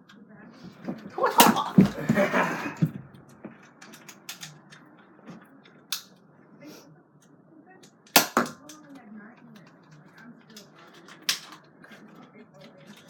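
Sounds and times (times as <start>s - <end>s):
plastic toy blaster clattering: 9.6s - 11.7s.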